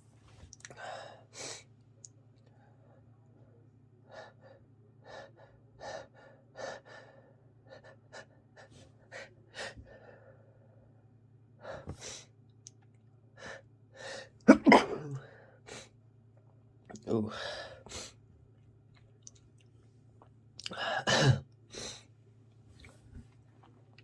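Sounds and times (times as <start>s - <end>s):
person sneezing: 14.5s - 15.2s, 21.0s - 21.4s.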